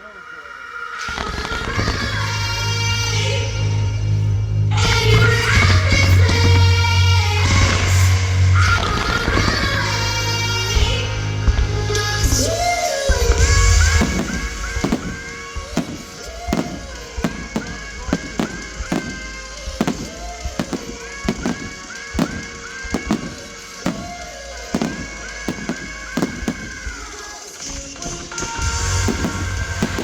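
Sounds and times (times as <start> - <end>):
music: 0.0 - 30.0
fireworks bangs: 1.1 - 3.0, 4.8 - 30.0
firework whistles falling in pitch: 13.9 - 19.2, 19.8 - 27.2.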